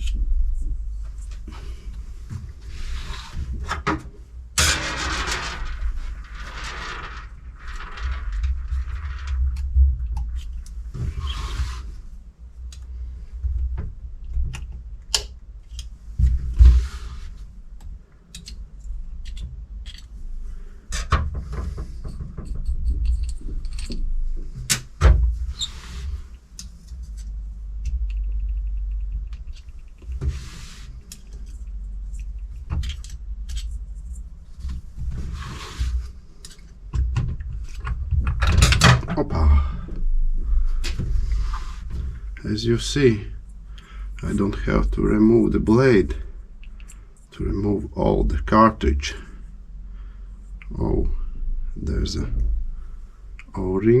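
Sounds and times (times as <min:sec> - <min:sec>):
short scraping noises: 0:11.0 - 0:12.0, 0:35.2 - 0:36.2, 0:40.7 - 0:42.2
metal parts and tools clicking: 0:22.4 - 0:24.1.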